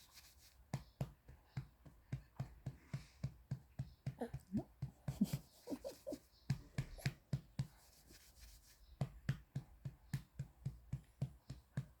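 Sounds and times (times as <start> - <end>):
hand patting baby's back: 0.7 - 7.9.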